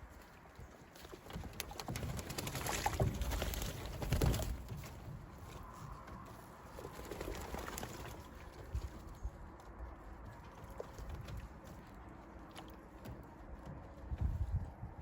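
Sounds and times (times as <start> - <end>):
pigeons knocking and scuffling: 1.0 - 8.8.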